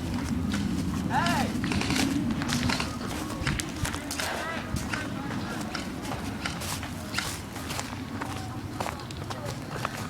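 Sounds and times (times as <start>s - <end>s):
steady low rumble: 0.0s - 8.8s
running footsteps: 0.0s - 10.0s.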